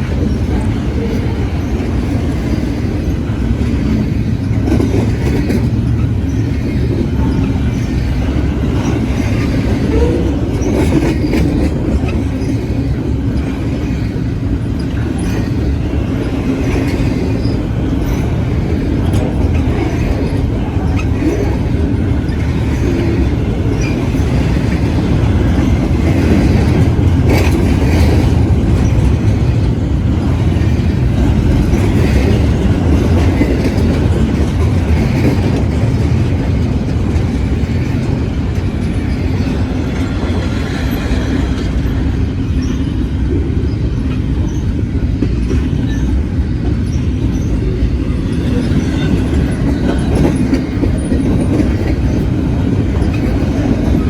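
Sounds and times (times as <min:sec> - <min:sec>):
train wheels rumbling on rails: 0:00.0 - 0:54.0.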